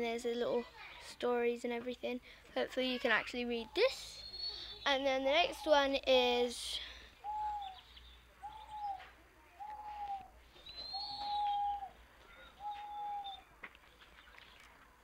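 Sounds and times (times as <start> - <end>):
faint high bird chirp: 3.6 - 14.8
bird hooting calls: 7.2 - 13.5.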